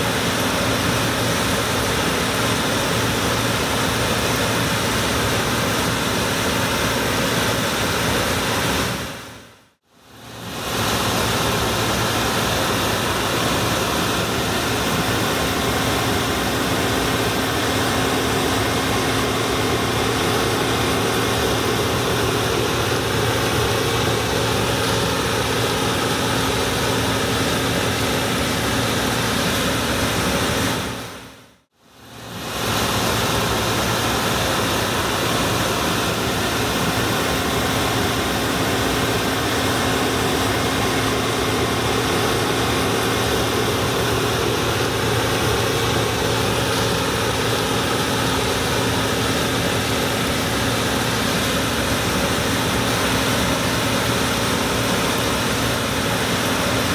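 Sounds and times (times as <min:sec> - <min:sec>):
combine harvester running: 0:00.0 - 0:09.4, 0:10.1 - 0:31.4, 0:32.0 - 0:56.9.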